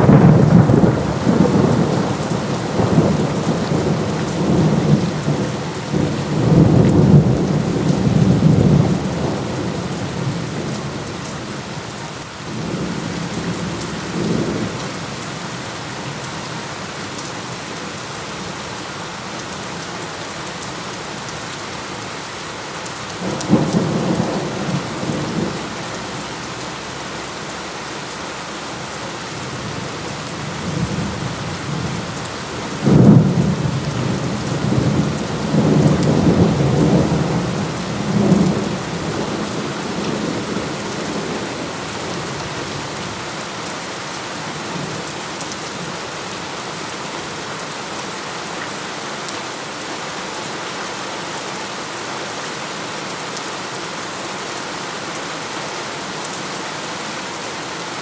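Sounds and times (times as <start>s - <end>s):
thunder clap and rumble: 0.0s - 10.8s, 29.6s - 42.8s
heavy rain: 0.0s - 58.0s.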